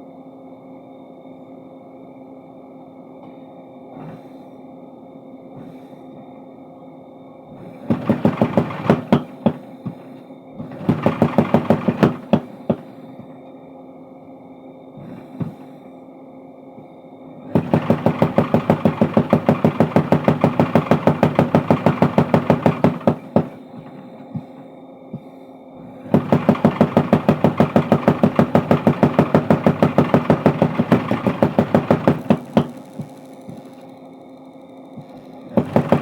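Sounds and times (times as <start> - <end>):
motor humming: 7.6 - 13.4, 17.4 - 36.0
power hammer pounding steel: 7.7 - 13.2, 15.0 - 15.7, 17.5 - 24.6, 25.9 - 33.8, 35.0 - 36.0.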